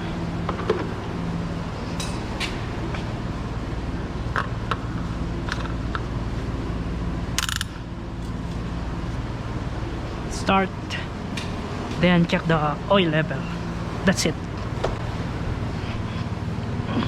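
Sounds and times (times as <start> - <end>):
steady low hum: 0.0 - 17.0
tools and parts clinking: 1.9 - 2.7.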